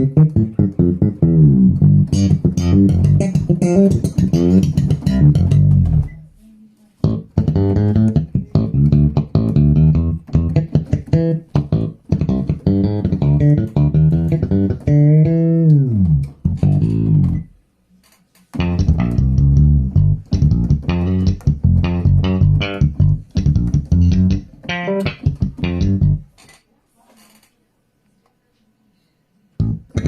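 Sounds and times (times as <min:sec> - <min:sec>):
plucked bass guitar: 0:00.0 - 0:06.3, 0:07.0 - 0:17.6, 0:18.6 - 0:26.4, 0:29.6 - 0:30.0.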